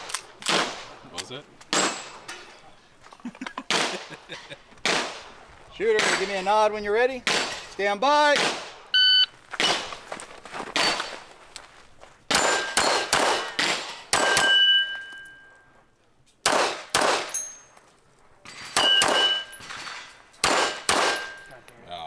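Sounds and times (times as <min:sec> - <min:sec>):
pistol shots: 0:00.0 - 0:02.5, 0:03.6 - 0:09.0, 0:09.6 - 0:10.1, 0:12.3 - 0:15.6, 0:16.4 - 0:17.8, 0:18.4 - 0:21.8
steel plates ringing: 0:12.3 - 0:16.0, 0:17.2 - 0:17.8, 0:18.4 - 0:21.9.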